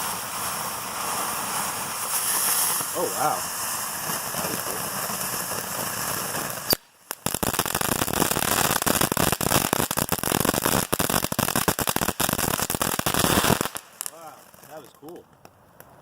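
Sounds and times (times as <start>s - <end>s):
firework sparks hissing: 0.0s - 15.2s
firework crackling: 0.0s - 16.0s
firework pop: 6.7s - 6.9s.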